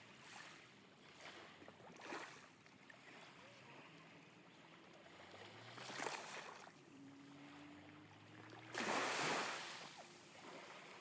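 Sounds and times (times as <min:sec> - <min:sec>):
sea waves washing onto shore: 0:08.7 - 0:10.0.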